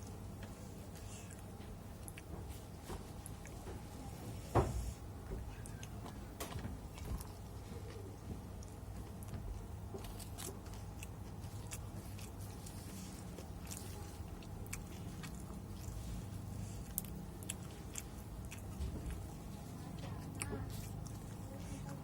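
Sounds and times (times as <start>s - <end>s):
low steady hum: 0.0s - 22.0s
person chewing food: 0.0s - 22.0s.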